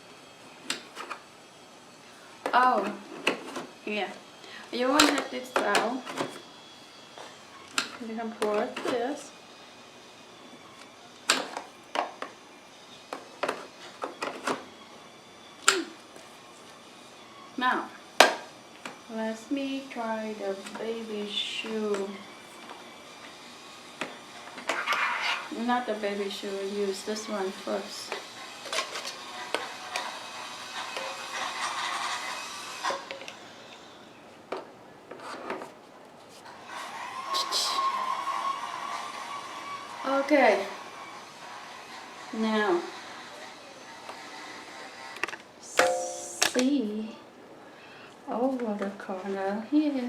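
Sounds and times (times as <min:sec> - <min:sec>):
vacuum parts clicking and knocking: 0:04.9 - 0:06.4.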